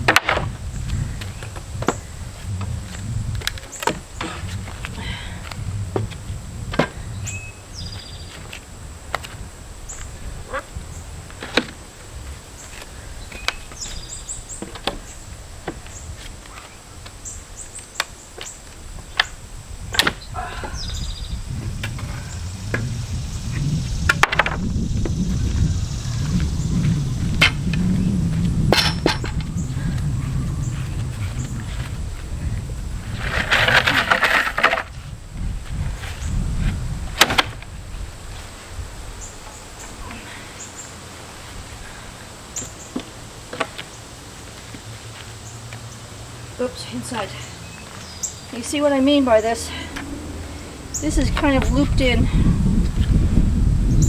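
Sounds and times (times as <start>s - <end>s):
low rumble: 20.6s - 33.6s, 49.6s - 54.0s
wood cracking and knocking: 33.2s - 35.0s.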